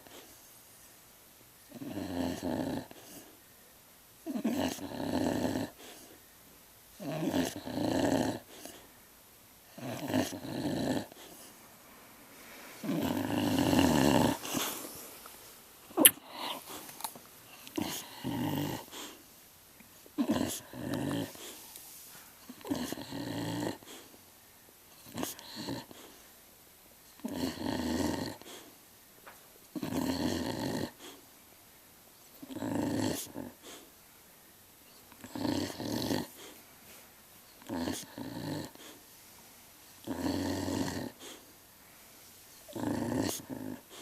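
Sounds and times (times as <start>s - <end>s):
animal snoring and grunting: 1.7s - 3.3s, 4.3s - 6.1s, 7.0s - 8.8s, 9.7s - 11.4s, 12.8s - 14.9s, 17.6s - 19.2s, 20.2s - 21.6s, 22.5s - 24.1s, 25.0s - 26.1s, 27.2s - 28.7s, 29.7s - 31.2s, 32.4s - 33.8s, 35.2s - 36.6s, 37.6s - 39.0s, 40.0s - 41.5s, 42.7s - 44.0s.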